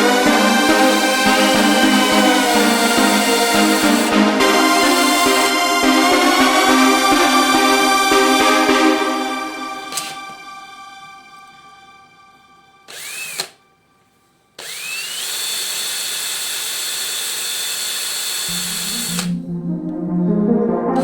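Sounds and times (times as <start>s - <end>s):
power drill whining: 0.7s - 5.5s, 9.9s - 10.4s, 12.9s - 13.6s, 14.6s - 19.3s.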